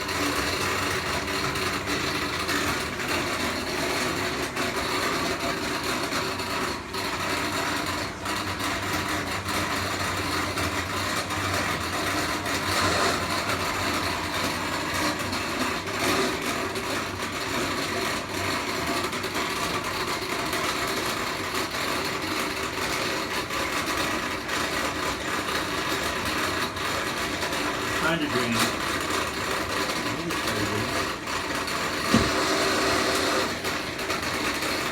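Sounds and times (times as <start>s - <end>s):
washer drain pump rattling: 0.0s - 34.9s.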